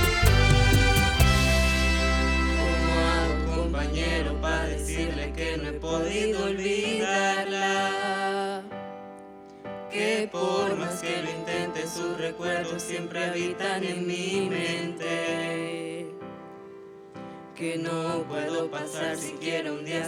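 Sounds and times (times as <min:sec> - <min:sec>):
wind band playing: 0:00.0 - 0:04.7
held low bass note: 0:00.0 - 0:06.9.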